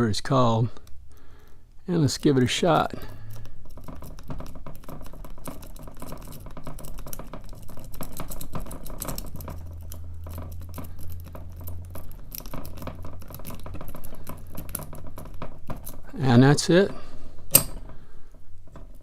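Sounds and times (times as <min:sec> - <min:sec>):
lock pick raking pins: 0:00.8 - 0:19.0
low hum: 0:06.0 - 0:19.0.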